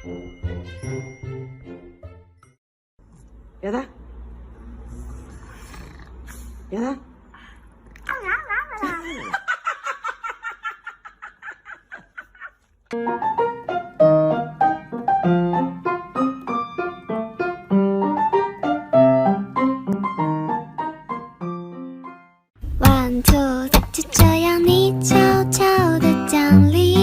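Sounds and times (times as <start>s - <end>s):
piano melody: 13.0s - 27.0s.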